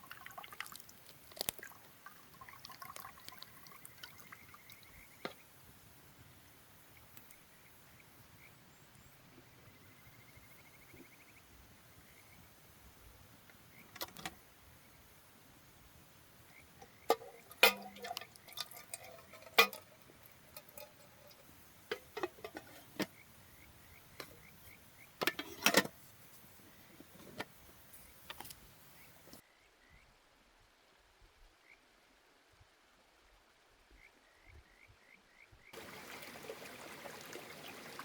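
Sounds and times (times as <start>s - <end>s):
metal cookware clinking: 16.8s - 23.0s, 25.2s - 25.9s.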